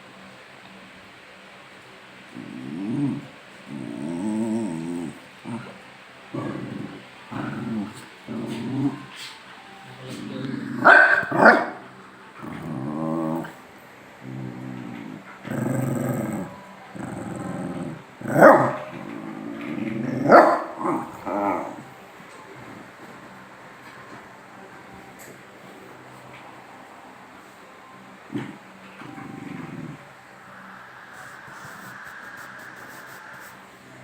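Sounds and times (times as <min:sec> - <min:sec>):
dogs play-growling: 0:02.2 - 0:22.0, 0:28.2 - 0:34.0
dog barking: 0:10.8 - 0:11.9, 0:18.3 - 0:18.9, 0:20.3 - 0:21.6.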